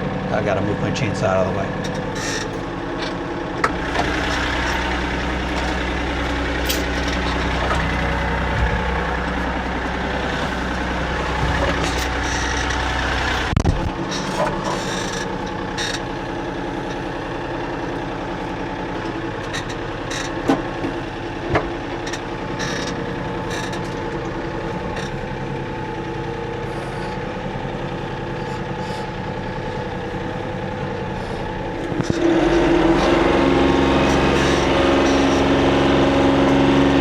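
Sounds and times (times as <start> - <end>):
diesel engine idling: 0.0 - 37.0
short knocks: 3.6 - 14.0.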